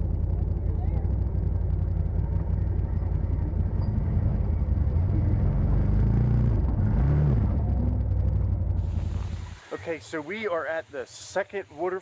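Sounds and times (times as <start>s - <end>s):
utility vehicle engine revving: 0.0s - 10.0s.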